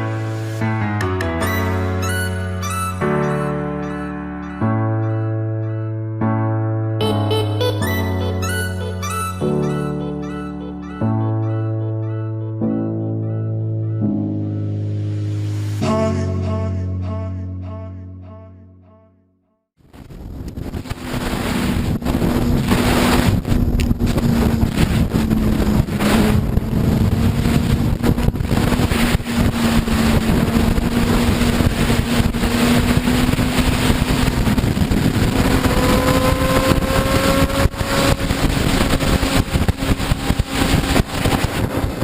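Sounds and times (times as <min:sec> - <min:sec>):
wind rush on microphone: 0:19.8 - 0:42.0
motorcycle engine running: 0:22.0 - 0:42.0.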